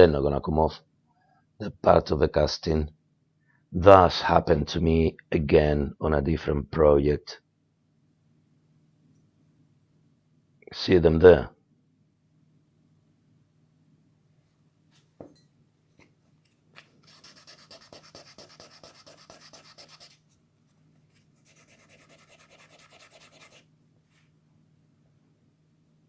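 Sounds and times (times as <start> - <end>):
sandpaper rubbing on metal: 17.0 - 20.2, 21.4 - 23.6.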